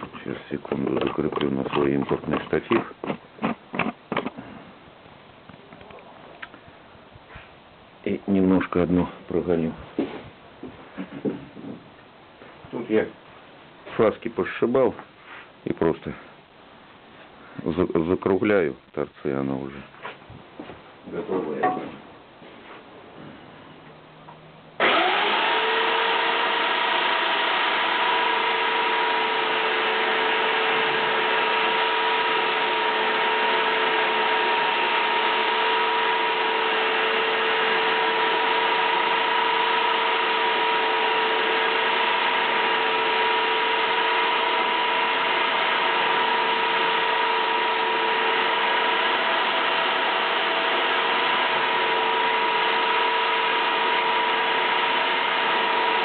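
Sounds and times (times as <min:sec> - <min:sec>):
belt sander running: 0:24.8 - 0:56.0.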